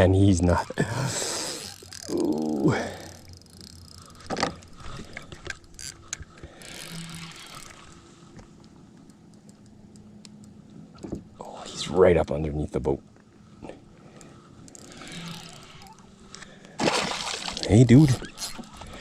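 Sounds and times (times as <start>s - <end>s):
faint steady hum: 0.0s - 19.0s
person exclaiming: 2.0s - 3.0s.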